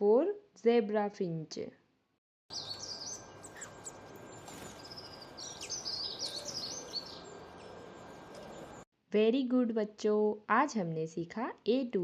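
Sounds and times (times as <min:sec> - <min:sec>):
outdoor background hiss: 0:02.5 - 0:08.8
small birds chirping: 0:02.5 - 0:08.8.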